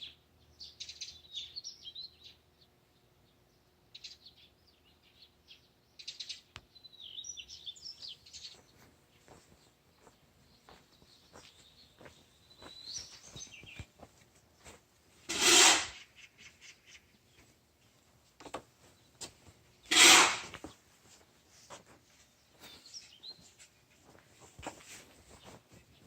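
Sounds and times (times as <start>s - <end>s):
small birds chirping: 0.0s - 26.0s
loud rasping rubs: 15.3s - 16.0s, 19.9s - 20.6s.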